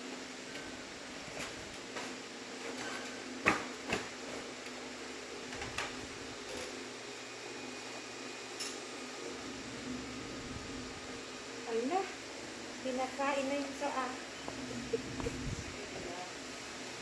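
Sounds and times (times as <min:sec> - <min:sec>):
steady low hum: 0:09.5 - 0:16.4.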